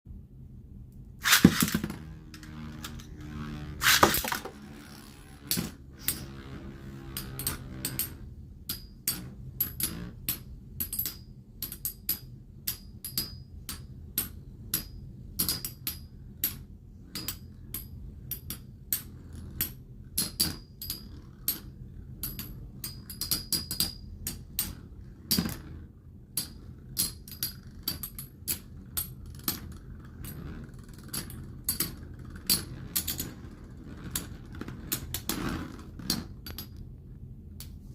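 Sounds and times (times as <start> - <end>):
whir of spinning tops: 1.2 - 8.4, 9.0 - 11.0, 18.3 - 36.7
spinning tops clashing metallic clacks: 1.2 - 13.3.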